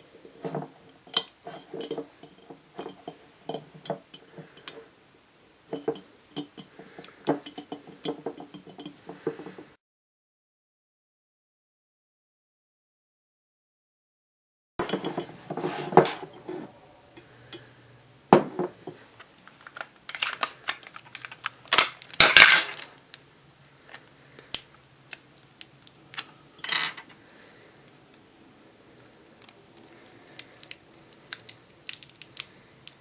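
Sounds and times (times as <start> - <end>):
plastic cube pieces clicking: 30.4 - 33.0.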